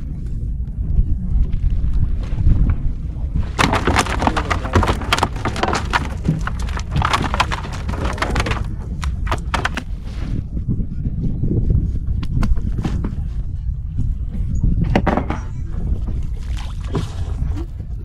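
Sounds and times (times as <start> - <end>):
wind and boat rumble: 0.0 - 18.0
fish slapping on wooden deck: 3.5 - 9.9.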